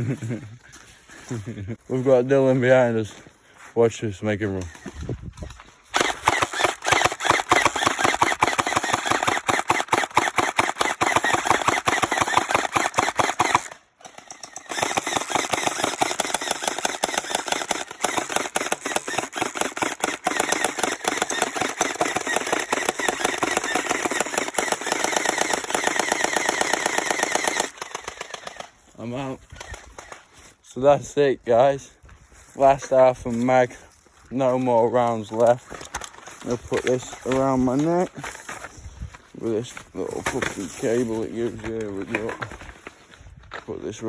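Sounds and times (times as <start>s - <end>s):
gel ball blaster rapid shots: 6.0s - 13.8s, 14.6s - 28.7s.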